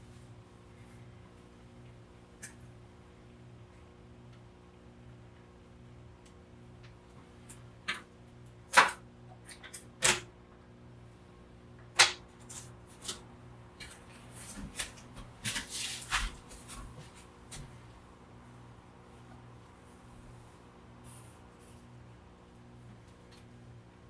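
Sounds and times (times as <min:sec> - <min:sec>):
rustling and scraping handling: 0:13.8 - 0:17.8.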